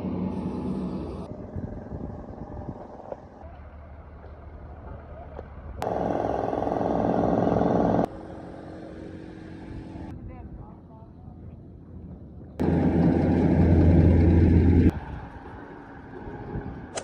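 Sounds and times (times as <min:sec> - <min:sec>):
road traffic noise: 0:00.0 - 0:10.1, 0:12.6 - 0:17.0
loud pitched drone: 0:05.8 - 0:10.1, 0:12.6 - 0:16.8.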